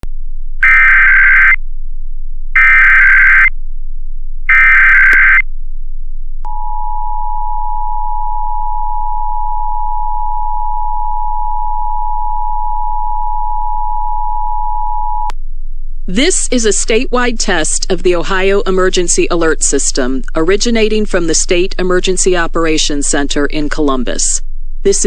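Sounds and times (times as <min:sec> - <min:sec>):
two-tone attention signal: 0:00.6 - 0:01.6, 0:02.6 - 0:03.5, 0:04.5 - 0:05.4
warbling digital header tones: 0:00.6 - 0:01.6, 0:02.6 - 0:03.5, 0:04.5 - 0:05.4.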